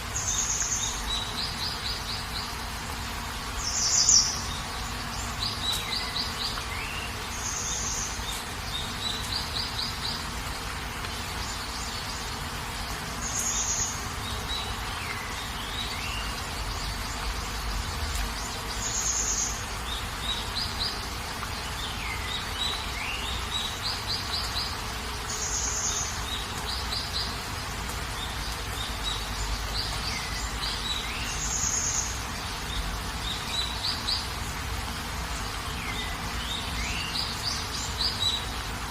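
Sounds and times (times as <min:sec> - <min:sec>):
birds chirping and trilling: 0:00.0 - 0:38.9
steady rain: 0:00.0 - 0:38.9.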